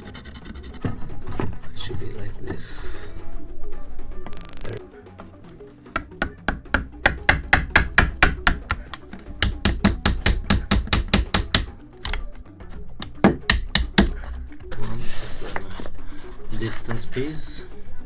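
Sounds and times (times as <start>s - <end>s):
hammer striking wood: 5.9s - 12.2s, 13.0s - 14.2s.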